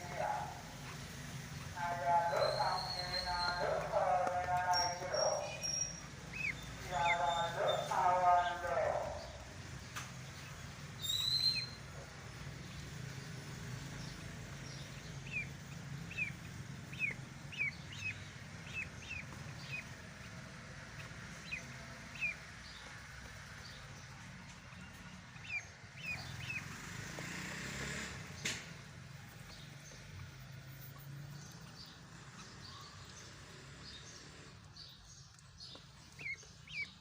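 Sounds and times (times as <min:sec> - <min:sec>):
duckling peeping: 0:01.8 - 0:09.4, 0:10.3 - 0:12.1, 0:14.8 - 0:26.7, 0:35.3 - 0:37.0.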